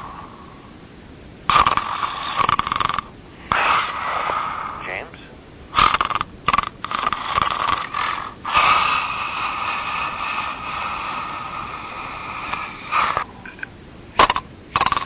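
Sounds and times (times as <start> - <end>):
man snorting: 1.5 - 13.3
man snoring: 1.6 - 5.1, 5.8 - 13.3.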